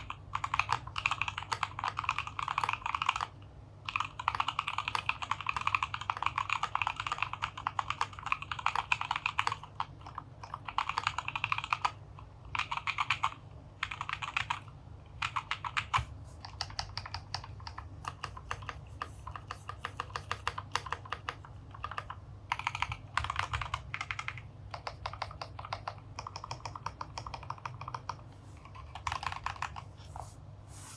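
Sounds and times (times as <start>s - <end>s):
mechanical keyboard typing: 0.0s - 29.9s.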